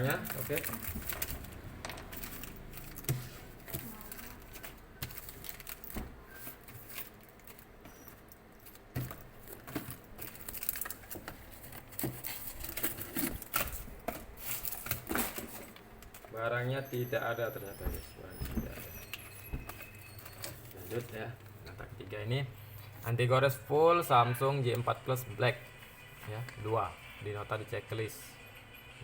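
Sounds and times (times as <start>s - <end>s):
small items clicking: 0.0s - 16.4s
plastic bags rustling: 0.0s - 26.8s.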